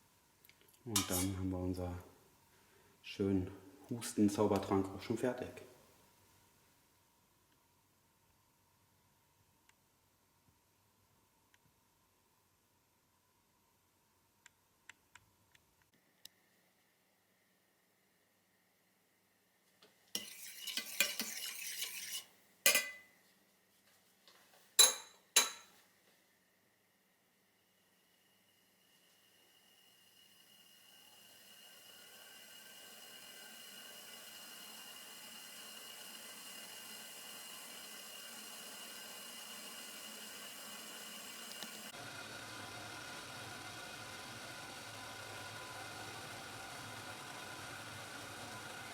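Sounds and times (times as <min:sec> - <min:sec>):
metal utensil scraping in a pot: 0:01.0 - 0:01.4, 0:20.2 - 0:23.1
pot heating hiss: 0:27.5 - 0:48.9.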